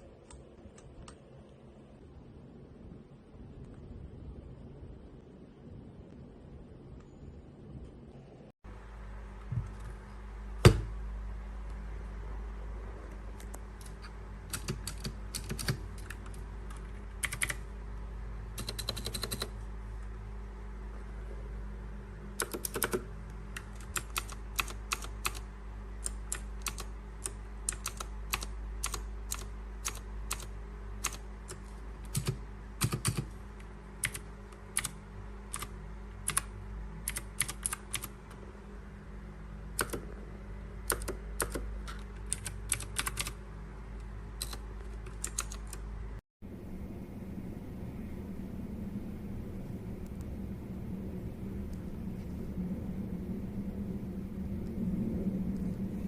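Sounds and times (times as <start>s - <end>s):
mechanical keyboard key clacks: 13.8s - 17.6s, 18.6s - 19.5s, 22.4s - 23.0s, 40.9s - 43.4s, 44.4s - 45.8s.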